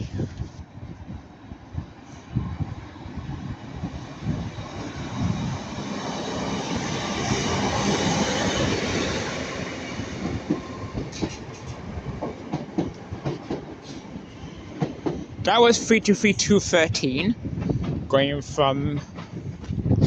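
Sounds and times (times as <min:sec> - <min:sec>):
electric train passing at speed: 0:00.0 - 0:20.0
train wheels clacking over rail joints: 0:10.0 - 0:16.0.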